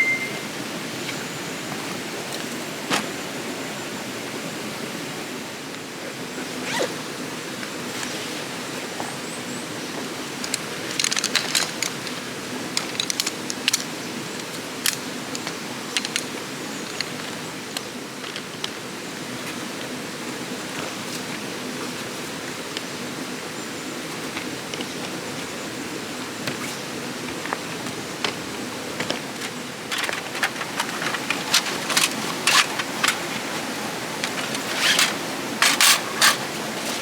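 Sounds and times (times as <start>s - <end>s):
flowing stream water: 27.2s - 37.0s.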